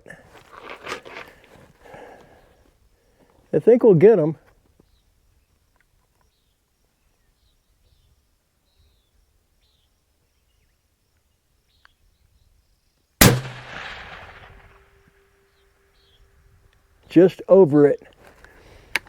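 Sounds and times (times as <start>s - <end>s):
suppressed rifle shot: 13.2s - 15.3s.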